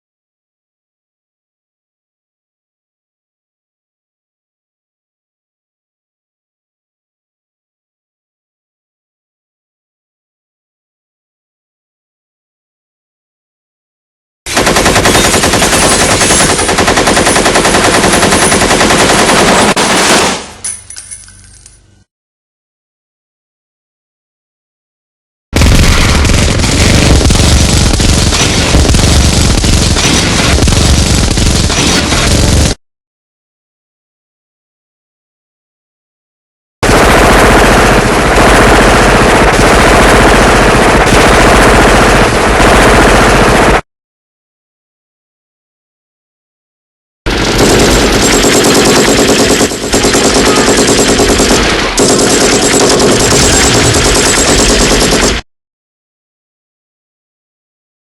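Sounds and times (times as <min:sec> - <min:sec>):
machine gun firing: 0:14.5 - 0:20.6, 0:25.6 - 0:32.8, 0:36.8 - 0:43.8, 0:47.3 - 0:55.4.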